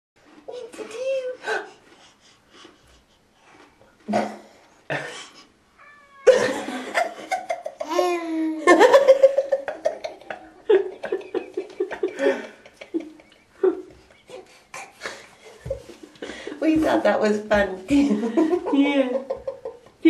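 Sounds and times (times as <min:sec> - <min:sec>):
people laughing hard: 0:08.7 - 0:13.8.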